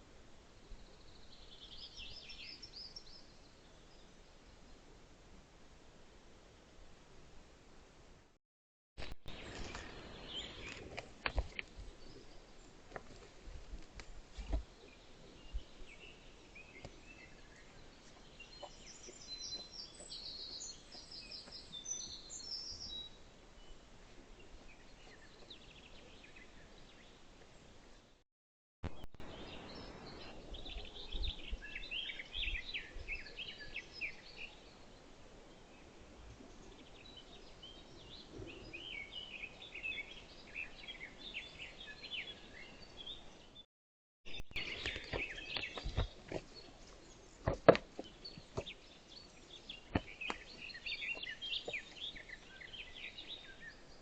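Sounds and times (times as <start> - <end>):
low outdoor hiss: 0.0 - 8.4
songbirds singing and chirping: 0.3 - 4.8, 9.0 - 28.2, 28.9 - 43.7, 44.3 - 54.0.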